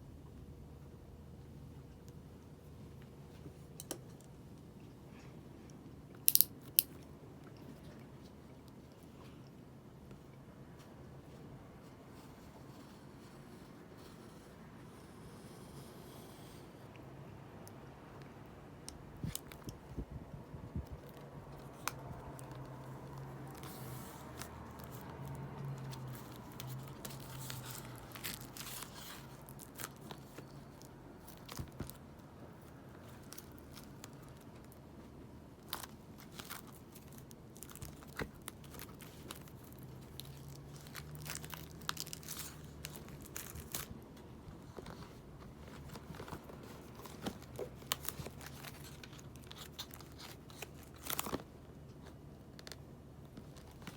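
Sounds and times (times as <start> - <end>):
plastic wrap tearing and crinkling: 21.1 - 32.0, 35.6 - 44.0, 45.6 - 51.5.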